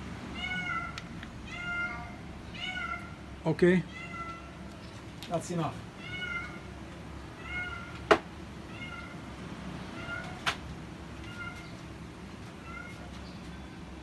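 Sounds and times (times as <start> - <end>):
small animal high calls: 0.4 - 3.2, 3.9 - 4.6, 6.0 - 6.7, 7.3 - 8.0, 8.7 - 9.2, 11.2 - 11.8, 12.6 - 13.1.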